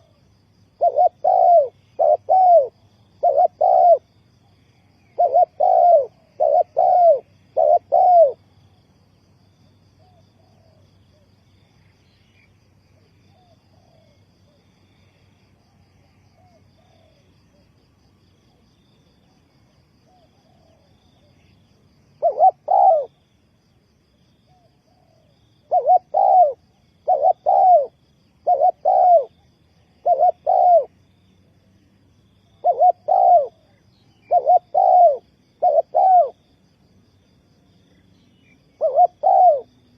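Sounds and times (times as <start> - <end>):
dove cooing: 0.0 - 0.2, 0.8 - 4.2, 4.8 - 8.5, 12.4 - 14.2, 16.1 - 17.6, 20.1 - 21.5, 22.2 - 23.2, 24.5 - 31.0, 32.5 - 36.4, 38.4 - 39.8
faint dove coos: 0.0 - 8.6, 10.0 - 23.3, 24.4 - 31.1, 32.4 - 36.5, 37.9 - 39.9.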